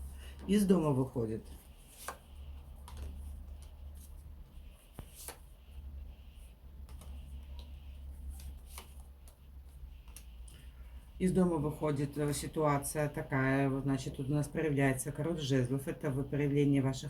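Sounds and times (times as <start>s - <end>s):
low steady hum: 0.0s - 17.0s
cards clicking and rustling: 2.8s - 3.8s, 8.2s - 9.4s.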